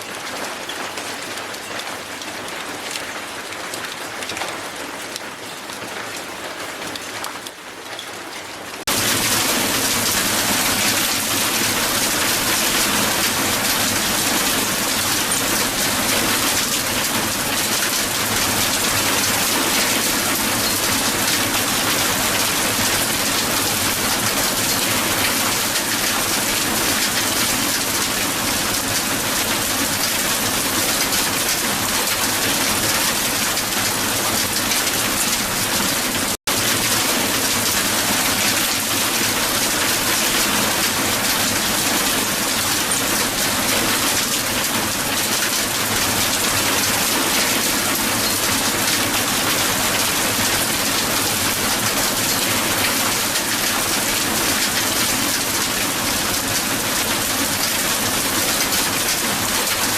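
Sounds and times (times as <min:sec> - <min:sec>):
hail pattering on ground: 0:00.0 - 0:59.9.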